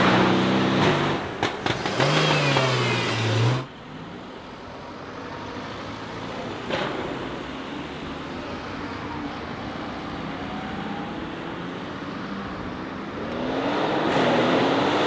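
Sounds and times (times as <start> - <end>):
car engine at high revs: 0.0 - 3.7, 12.4 - 15.0.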